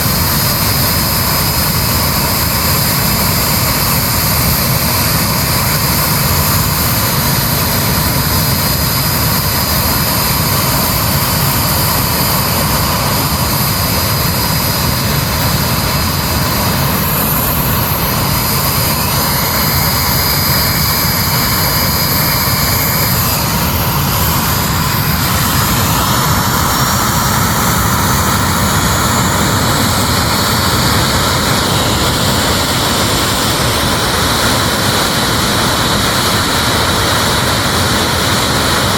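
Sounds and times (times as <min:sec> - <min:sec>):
large engine running: 0:00.0 - 0:38.9
high whining tones: 0:05.0 - 0:35.4.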